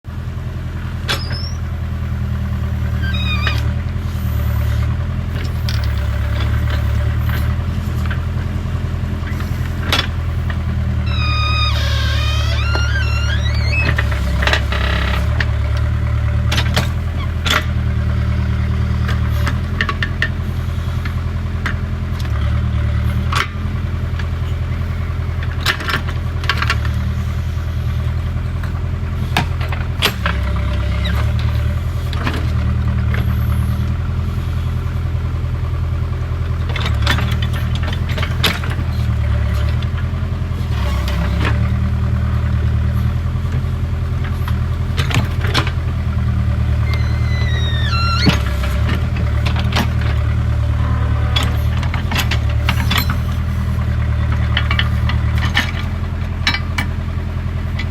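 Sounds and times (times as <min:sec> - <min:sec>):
diesel engine running: 0:00.1 - 0:57.9.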